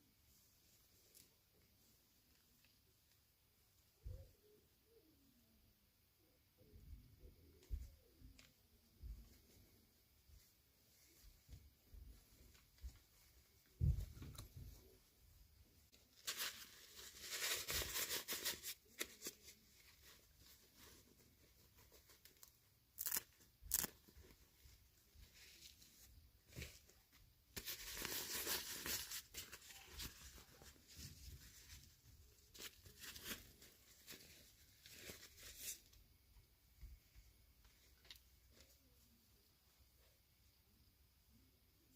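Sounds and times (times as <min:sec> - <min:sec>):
packaging tearing and crinkling: 0:23.0 - 0:24.0.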